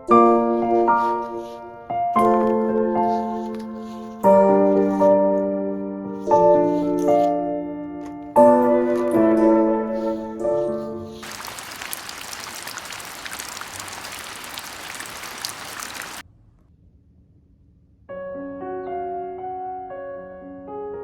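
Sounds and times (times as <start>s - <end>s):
heavy rain falling: 11.2s - 16.2s.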